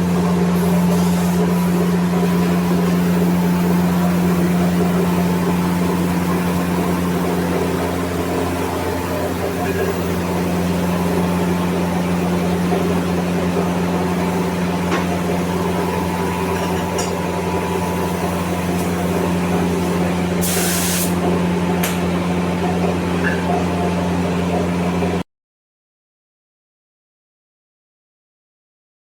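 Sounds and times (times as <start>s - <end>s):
steady mechanical hum: 0.0s - 25.2s
paint spray gun hiss: 0.2s - 22.0s.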